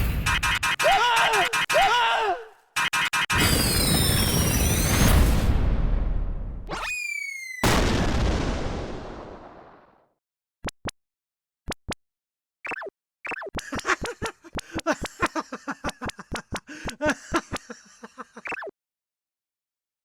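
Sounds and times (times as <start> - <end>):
cartoon explosion: 3.3 - 10.0
springy pops dropping in pitch: 12.6 - 13.6.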